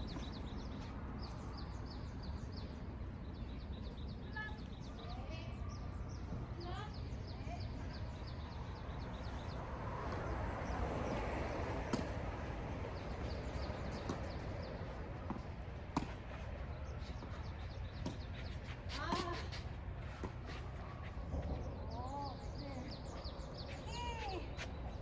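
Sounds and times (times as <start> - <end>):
tennis ball struck by rackets: 11.0 - 12.3, 15.2 - 16.3
ball bouncing on court: 11.8 - 12.2.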